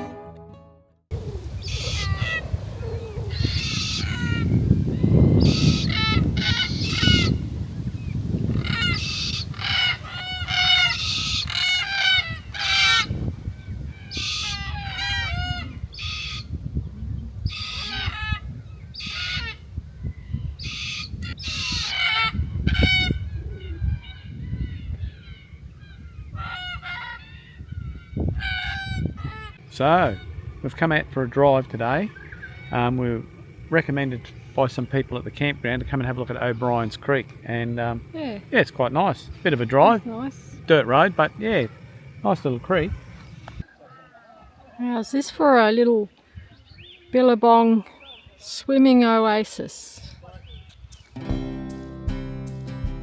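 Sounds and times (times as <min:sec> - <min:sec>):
flock of birds calling: 0:01.1 - 0:51.2
steady low rumble: 0:27.7 - 0:43.6.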